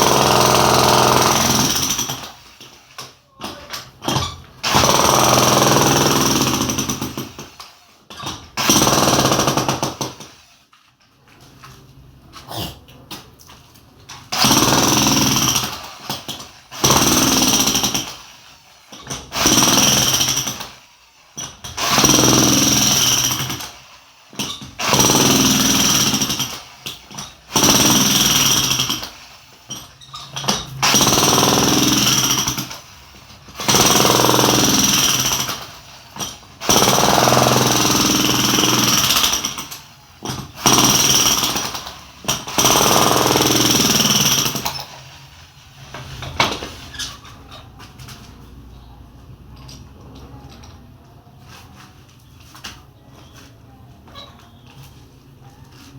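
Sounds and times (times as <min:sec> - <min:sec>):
jackhammer chipping concrete: 0:00.0 - 0:02.3, 0:04.1 - 0:07.4, 0:08.2 - 0:10.2, 0:14.3 - 0:18.2, 0:19.0 - 0:20.7, 0:21.6 - 0:23.7, 0:24.4 - 0:29.1, 0:30.4 - 0:32.8, 0:33.6 - 0:44.9.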